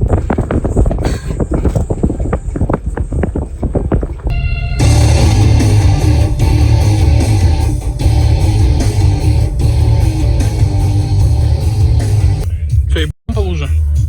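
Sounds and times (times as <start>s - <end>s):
guitar-driven rock music: 4.3s - 12.4s.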